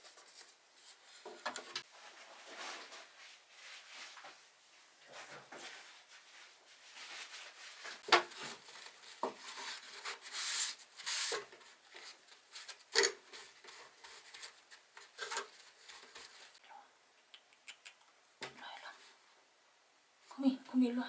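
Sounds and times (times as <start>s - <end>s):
rubbing and scraping on wood: 5.3s - 16.6s.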